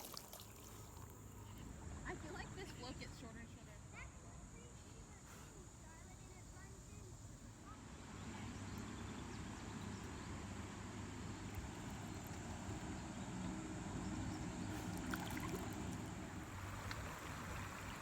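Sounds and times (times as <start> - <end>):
river water rushing: 14.8 - 18.0.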